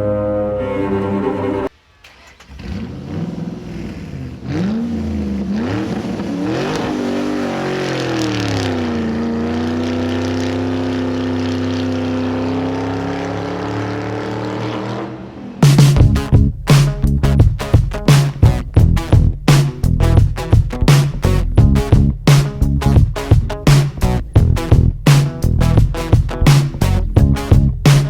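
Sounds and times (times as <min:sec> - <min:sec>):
vehicle engine revving: 0:02.4 - 0:16.2.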